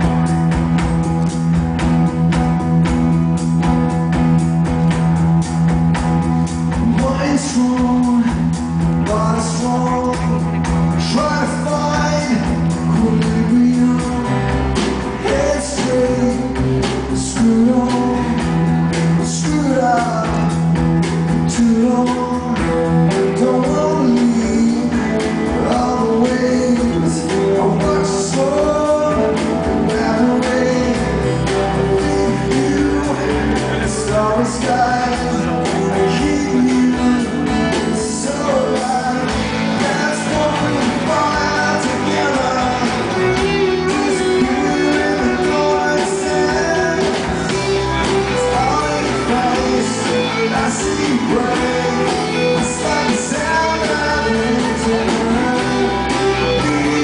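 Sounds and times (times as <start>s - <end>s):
rock band playing: 0.0s - 57.0s
man singing lead vocal: 6.3s - 57.0s.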